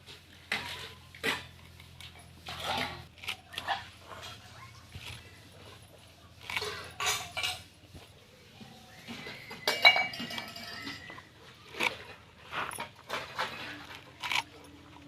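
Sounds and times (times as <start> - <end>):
metal kitchen utensils clinking: 0.5 - 4.6, 6.5 - 7.8, 9.0 - 15.0.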